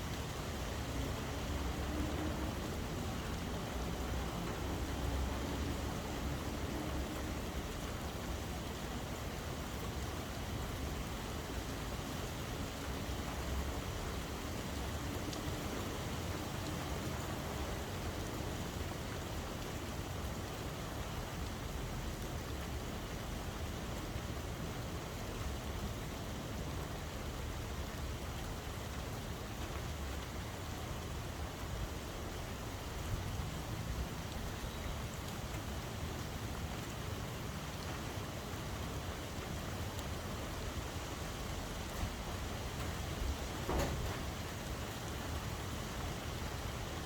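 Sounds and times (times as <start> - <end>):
steady rain pattering: 0.0 - 47.0.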